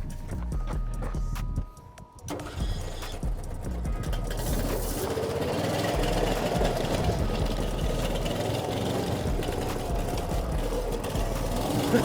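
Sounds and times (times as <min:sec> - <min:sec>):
small motor puttering: 0:02.3 - 0:12.0.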